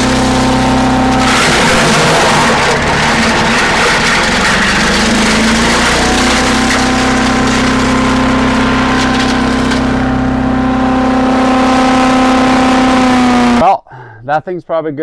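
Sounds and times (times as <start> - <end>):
sharp clatters: 0.0 - 9.9
wood chipper engine running: 0.0 - 13.6.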